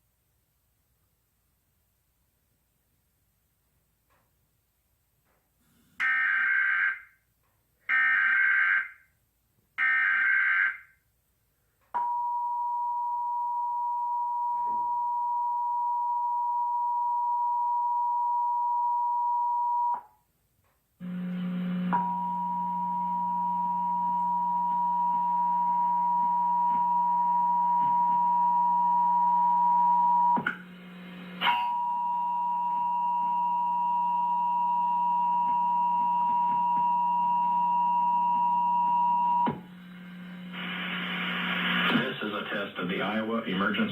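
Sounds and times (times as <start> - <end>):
two-tone attention signal: 21.0 - 30.6
low hum: 21.0 - 42.0.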